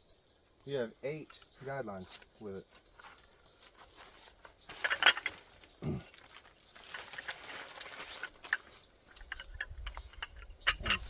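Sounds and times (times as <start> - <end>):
packaging rustling: 3.0 - 8.8.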